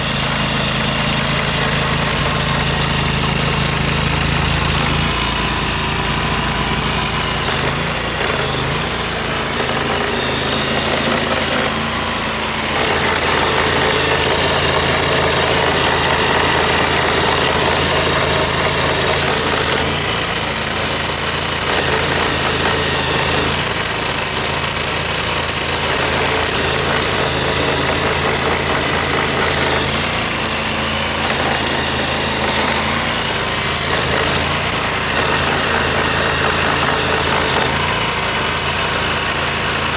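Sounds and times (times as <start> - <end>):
pressure washer engine running: 0.0 - 39.9.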